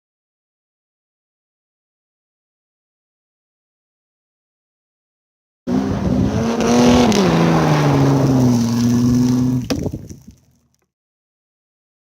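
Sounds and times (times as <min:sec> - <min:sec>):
car engine revving: 0:05.7 - 0:10.1.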